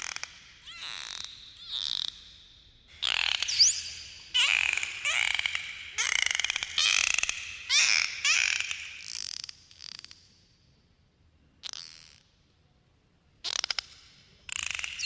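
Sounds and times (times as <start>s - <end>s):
dolphin squeaky calls: 0.6s - 2.3s, 3.0s - 9.1s.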